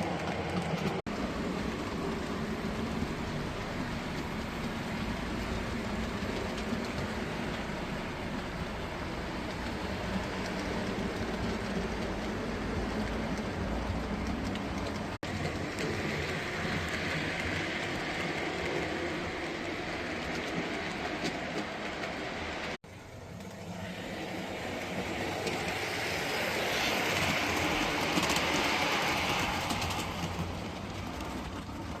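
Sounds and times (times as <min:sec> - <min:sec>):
model train wheels rattling on rail: 0:09.3 - 0:32.0.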